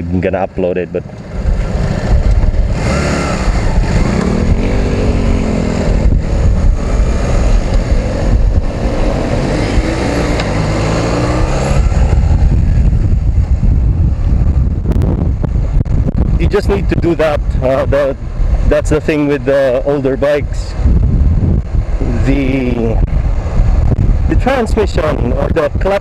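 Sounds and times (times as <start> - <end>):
wind rumble on microphone: 0.0 - 26.0
motorcycle engine running: 0.9 - 20.0.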